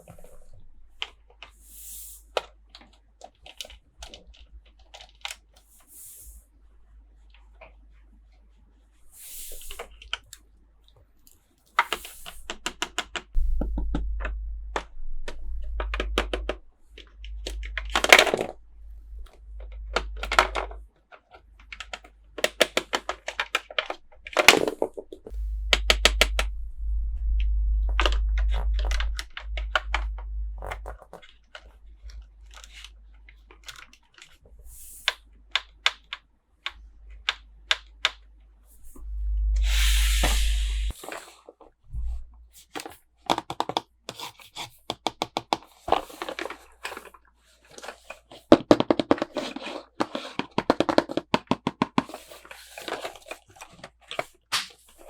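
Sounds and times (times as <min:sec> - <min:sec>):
plastic toy pieces clicking: 0:02.4 - 0:05.6, 0:19.9 - 0:26.3, 0:32.5 - 0:34.4, 0:47.7 - 0:54.9
low rumble: 0:13.4 - 0:20.8, 0:25.2 - 0:32.5, 0:38.8 - 0:41.0.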